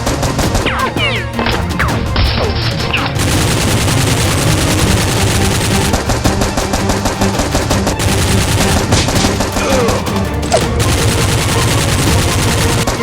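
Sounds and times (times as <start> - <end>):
rapid automatic gunfire: 0.0 - 0.9, 3.1 - 9.9, 10.5 - 13.0
background music: 0.0 - 13.0.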